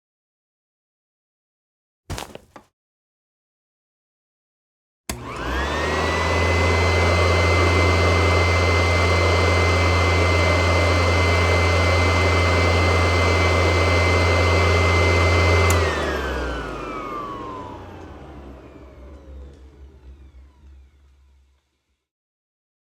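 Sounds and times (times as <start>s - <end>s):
motor spinning down: 5.1s - 22.0s
vacuum cleaner motor whine: 5.1s - 22.1s.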